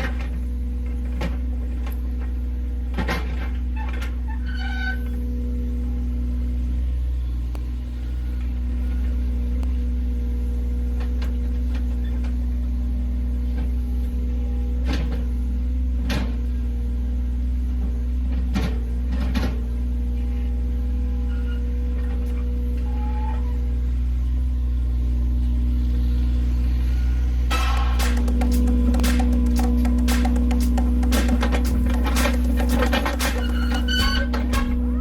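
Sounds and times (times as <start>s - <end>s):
excavator diesel engine running: 0.0s - 4.4s, 5.0s - 35.0s
sharp knocks of machine working: 27.5s - 35.0s.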